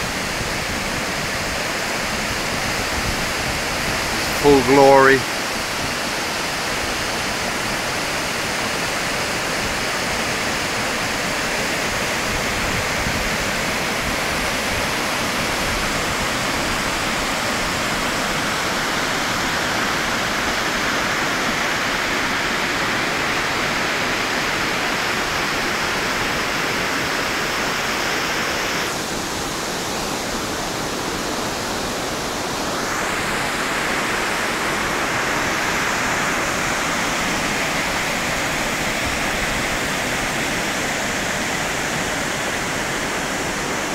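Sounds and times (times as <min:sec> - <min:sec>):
waterfall rushing: 0:00.0 - 0:43.9.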